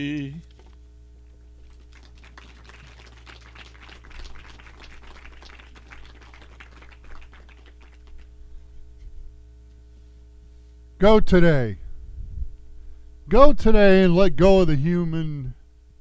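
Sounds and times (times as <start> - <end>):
electrical hum: 0.0 - 16.0
light clapping: 1.6 - 8.3.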